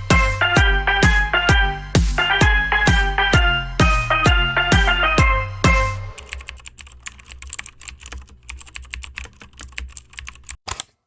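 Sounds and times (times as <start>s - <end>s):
pitched music note: 0.0s - 6.2s
quick irregular clicks and taps: 6.2s - 11.0s.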